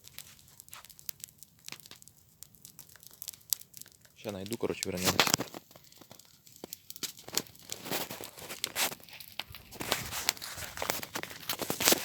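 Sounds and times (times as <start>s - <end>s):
paper burning and crackling: 0.0s - 12.0s
paper rustling: 9.7s - 12.0s.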